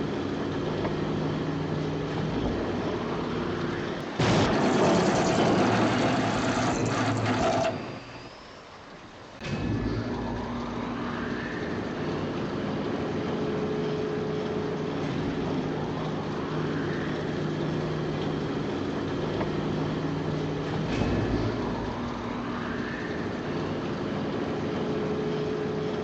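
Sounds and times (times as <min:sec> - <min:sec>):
engine humming: 0:00.0 - 0:26.0.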